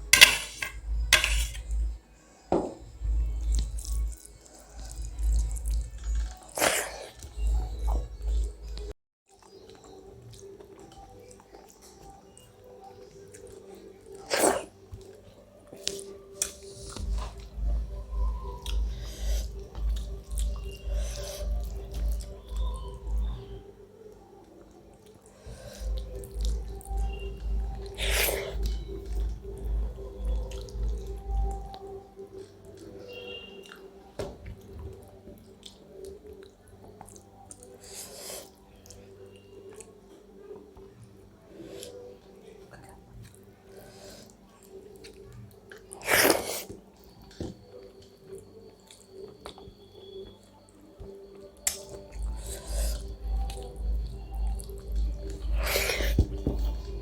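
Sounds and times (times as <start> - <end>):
person chewing food: 3.1 - 23.6, 24.4 - 39.0, 51.0 - 57.0.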